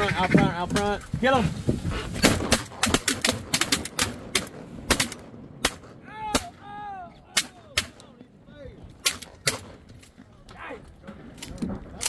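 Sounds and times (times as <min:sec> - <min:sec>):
shotgun blasts: 0:02.2 - 0:06.6, 0:09.0 - 0:09.8.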